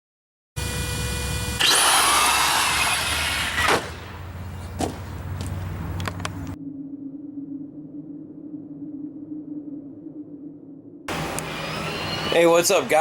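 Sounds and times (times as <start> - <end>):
small electric motor whining: 0.6 - 3.9, 11.1 - 13.0.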